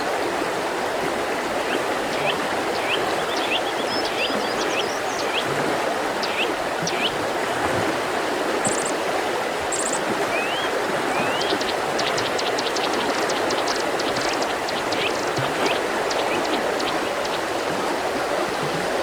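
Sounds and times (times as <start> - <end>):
river rushing: 0.0 - 19.0
small birds chirping: 9.7 - 17.7.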